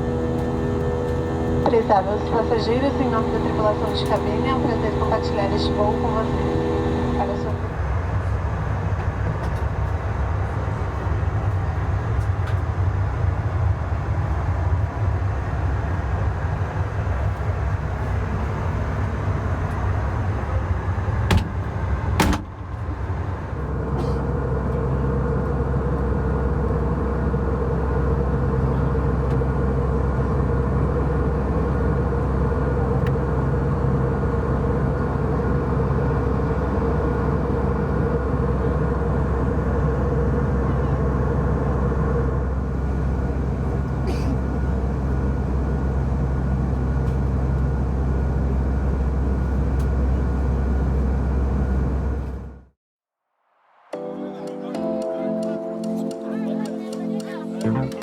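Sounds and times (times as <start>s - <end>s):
humming tone: 0.0s - 7.8s
airplane cabin rumble: 0.0s - 52.7s.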